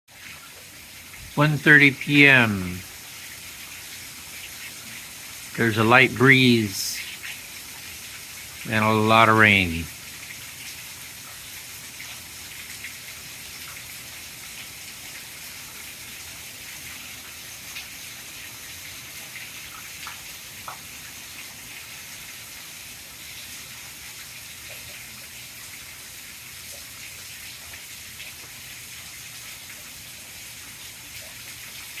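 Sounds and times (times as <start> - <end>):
heavy rain falling: 1.0 - 10.1.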